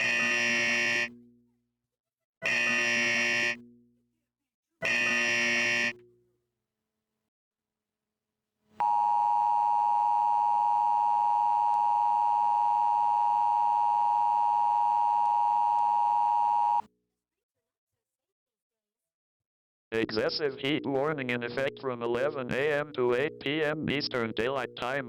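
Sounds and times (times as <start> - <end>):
two-tone attention signal: 8.8 - 16.8.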